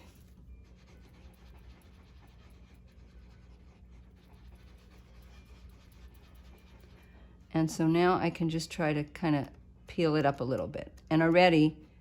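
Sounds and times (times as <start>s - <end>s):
scratching on parchment: 0.0s - 7.5s
low steady hum: 0.0s - 12.0s.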